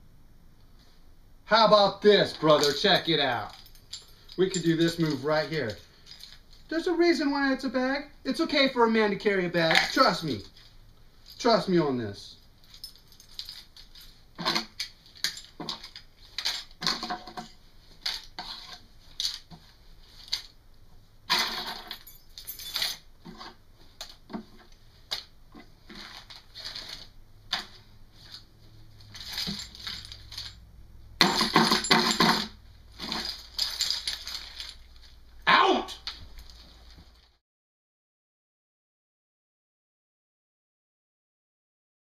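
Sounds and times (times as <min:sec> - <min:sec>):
bag contents rattling: 0:21.6 - 0:30.6, 0:31.2 - 0:35.2.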